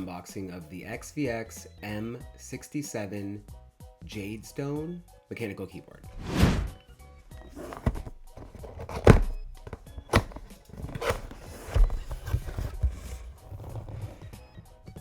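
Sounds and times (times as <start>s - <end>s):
background music: 0.0s - 15.0s
cardboard box thuds and rustles: 7.4s - 14.4s.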